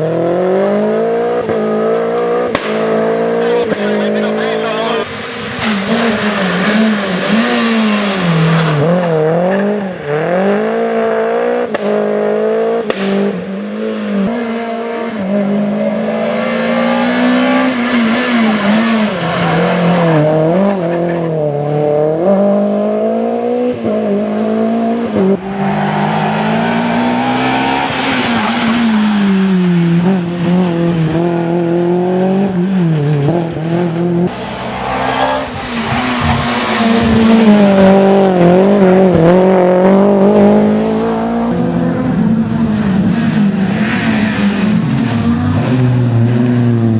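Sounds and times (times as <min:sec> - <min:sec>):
rally car engine revving: 0:00.0 - 0:46.9.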